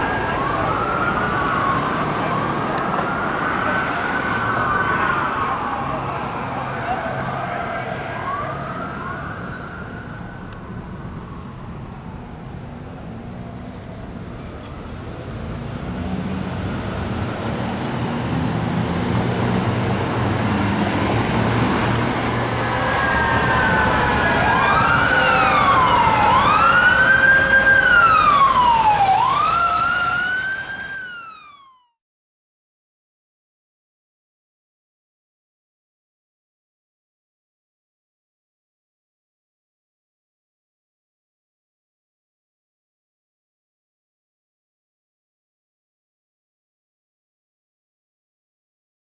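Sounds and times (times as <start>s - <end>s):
fire truck engine rumble: 0.0s - 31.4s
hand-cranked siren wailing: 22.6s - 32.0s.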